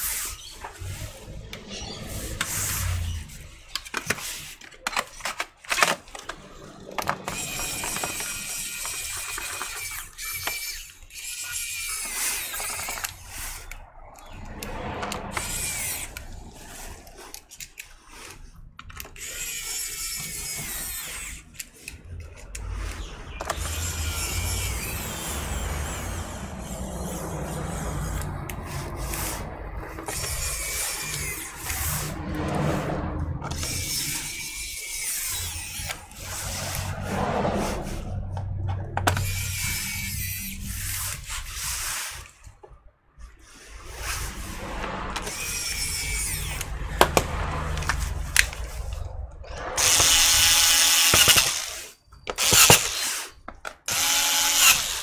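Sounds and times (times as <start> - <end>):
electric screwdriver motor whining: 6.8 - 13.8, 19.1 - 27.2, 49.8 - 55.0.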